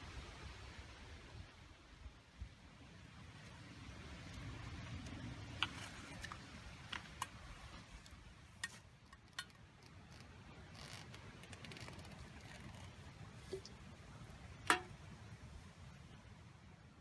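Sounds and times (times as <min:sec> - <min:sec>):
campfire wood crackling: 0:03.0 - 0:15.0.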